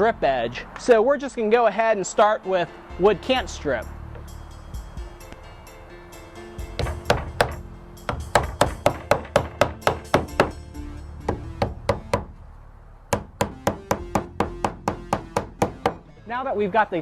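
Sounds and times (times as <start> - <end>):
hammer driving nails into wood: 6.8 - 10.6, 13.1 - 16.0.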